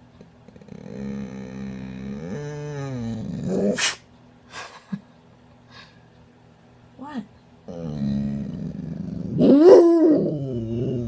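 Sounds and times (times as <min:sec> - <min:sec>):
dog growling vocalization: 0:00.4 - 0:03.8, 0:07.7 - 0:11.0.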